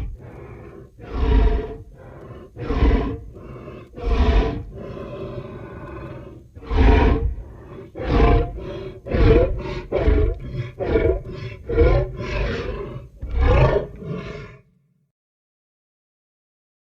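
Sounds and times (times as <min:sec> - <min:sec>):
dinosaur calls: 0:00.0 - 0:14.6.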